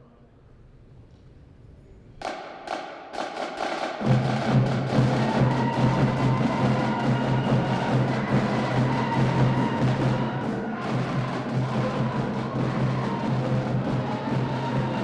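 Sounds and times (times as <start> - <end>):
drum hits: 2.2 - 15.0
live band playing held notes: 4.1 - 15.0.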